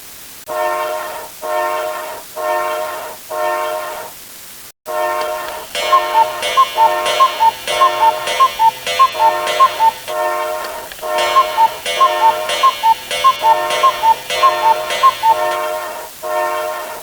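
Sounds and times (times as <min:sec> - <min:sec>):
chopped electronic alarm tone: 0:05.1 - 0:15.9.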